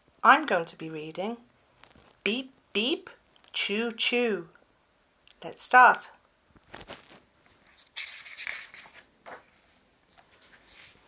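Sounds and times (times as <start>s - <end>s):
book pages rustling: 6.6s - 11.0s.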